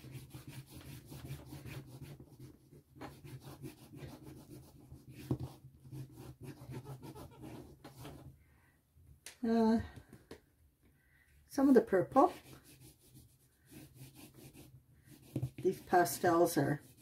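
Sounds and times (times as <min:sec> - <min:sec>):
wax pastel rubbing on surface: 0:00.0 - 0:08.2, 0:12.0 - 0:17.0.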